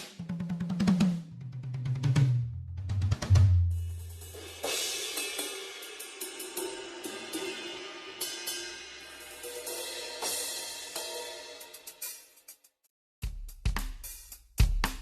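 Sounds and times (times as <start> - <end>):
cymbal and hi-hat strikes: 0.0 - 0.3, 3.6 - 15.0
cymbal crash: 3.7 - 12.2.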